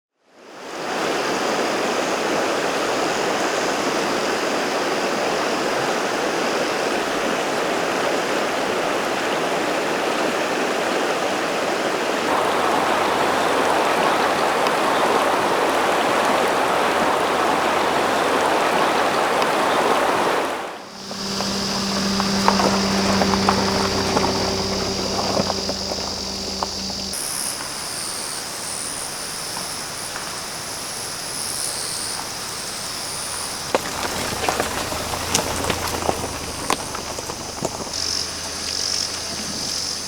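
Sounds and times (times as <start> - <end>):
river water rushing over rocks: 11.8 - 27.2, 32.3 - 39.1
faint high insect trill: 20.8 - 40.0.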